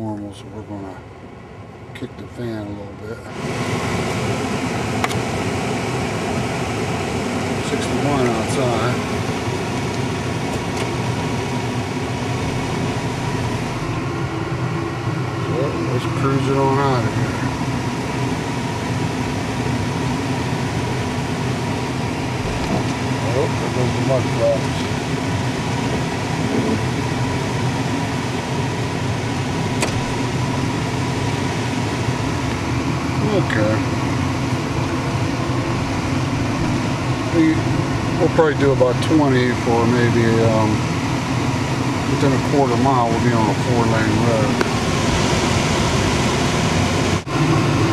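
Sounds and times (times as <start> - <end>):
air conditioning fan hiss: 0.0 - 47.9
car engine idling hum: 0.0 - 47.9
sharp click: 29.8 - 30.0.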